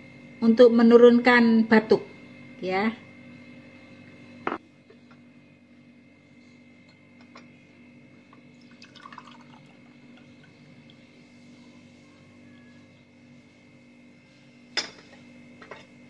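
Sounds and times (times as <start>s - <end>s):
liquid dripping into a glass: 8.4s - 11.1s.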